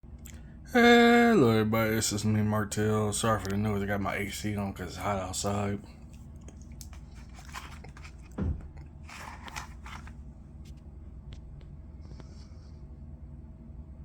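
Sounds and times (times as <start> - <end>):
air conditioner hum: 0.0 - 14.0
packaging crinkling and scraping: 6.1 - 10.8
low thump: 8.4 - 8.7.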